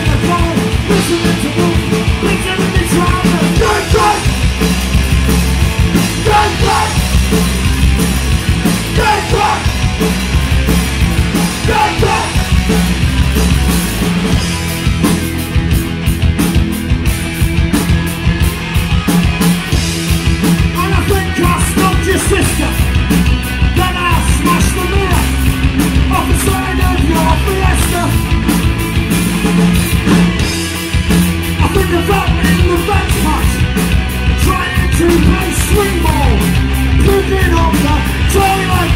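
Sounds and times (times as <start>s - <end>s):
punk rock band playing: 0.0s - 38.9s
person singing: 0.1s - 4.3s, 6.2s - 7.1s, 8.9s - 9.8s, 11.6s - 13.0s.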